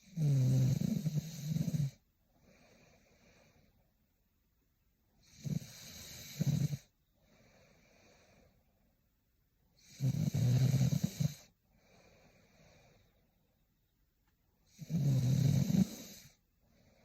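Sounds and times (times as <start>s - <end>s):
woman snoring: 0.0s - 2.0s, 5.2s - 6.9s, 9.8s - 11.5s, 14.7s - 16.4s
soft breath: 1.9s - 4.0s, 6.8s - 9.0s, 11.3s - 13.7s, 15.8s - 17.0s.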